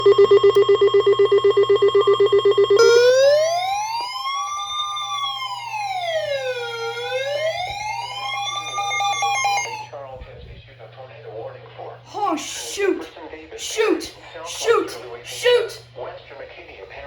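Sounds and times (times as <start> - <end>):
electronic siren alert tone: 0.0 - 9.9
steady low hum: 0.0 - 17.0.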